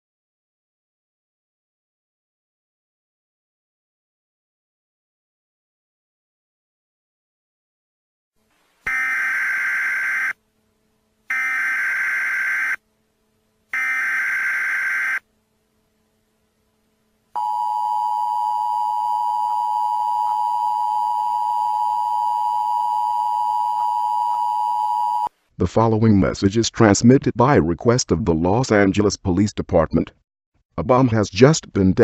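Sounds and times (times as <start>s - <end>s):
two-tone alarm: 8.9s - 10.4s, 11.3s - 12.8s, 13.7s - 15.2s, 17.4s - 25.3s.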